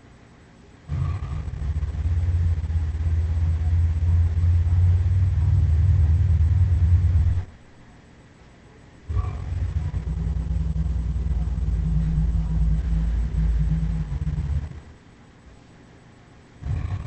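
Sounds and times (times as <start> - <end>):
deep monster rumble: 0.9 - 7.6, 9.1 - 15.0, 16.6 - 17.0.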